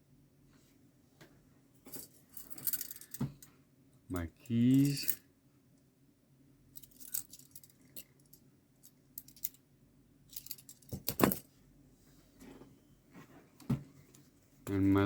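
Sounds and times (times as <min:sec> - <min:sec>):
keys jangling: 0:01.9 - 0:03.2.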